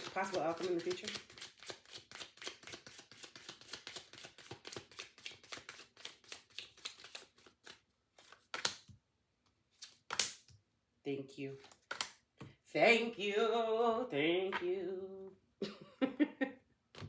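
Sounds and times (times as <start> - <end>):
cards being shuffled: 0.0 - 8.9, 9.7 - 10.5, 11.6 - 12.2
single card snaps: 9.8 - 10.5, 11.9 - 12.2.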